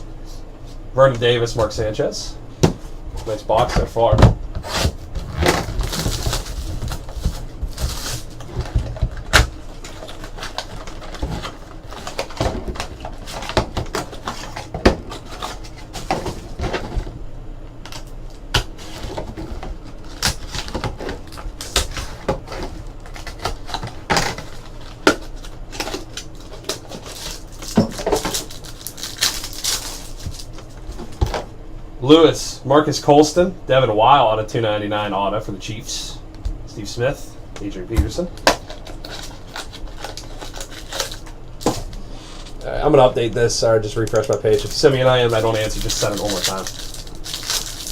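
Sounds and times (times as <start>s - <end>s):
wrappers rustling: 5.3s - 8.8s, 23.0s - 31.2s, 38.6s - 42.7s, 43.9s - 47.9s.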